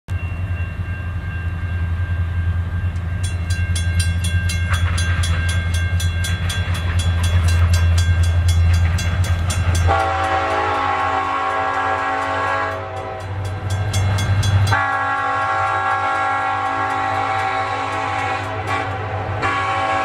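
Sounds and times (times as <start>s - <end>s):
diesel locomotive rumbling: 0.1s - 20.0s
bell ringing rapidly: 3.1s - 10.0s
train air horn: 9.8s - 13.4s, 14.7s - 20.0s.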